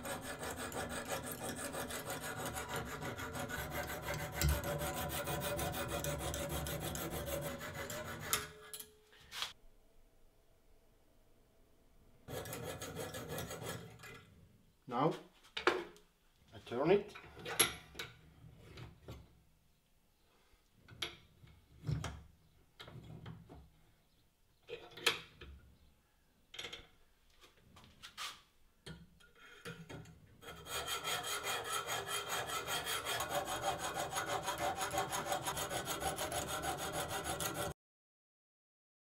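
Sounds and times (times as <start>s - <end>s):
sharpening stone rasping on blade: 0.0s - 8.8s, 30.4s - 37.7s.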